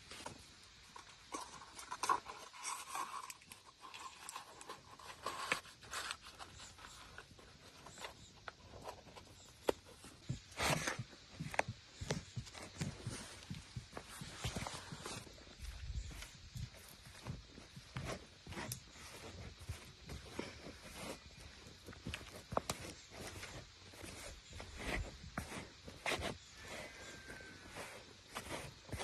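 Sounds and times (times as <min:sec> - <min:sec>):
rustling of handled objects: 0:00.0 - 0:29.0.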